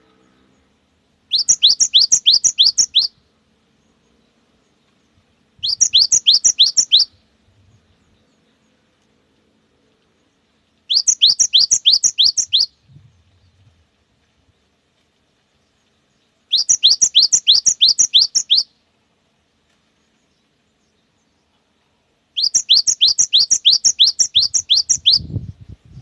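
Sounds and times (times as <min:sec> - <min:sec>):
bird singing whistled notes: 0:01.3 - 0:03.2, 0:05.6 - 0:08.7, 0:10.9 - 0:13.8, 0:16.1 - 0:18.8, 0:22.3 - 0:26.0.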